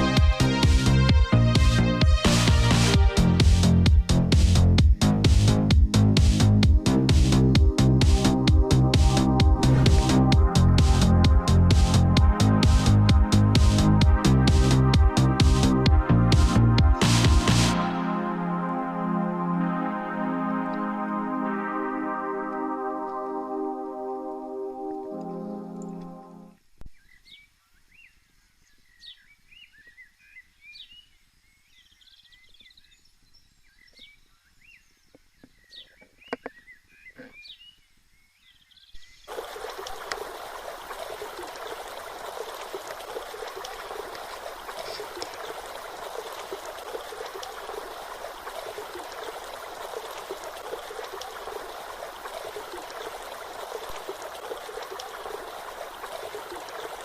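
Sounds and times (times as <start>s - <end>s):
waterfall rushing: 8.0s - 18.1s, 39.3s - 57.0s
small birds chirping: 26.8s - 39.6s, 40.2s - 57.0s.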